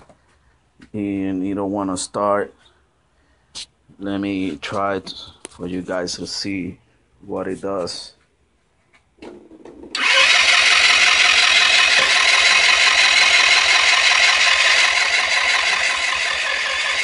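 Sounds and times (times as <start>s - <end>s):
scooter starter motor cranking: 10.0s - 17.0s.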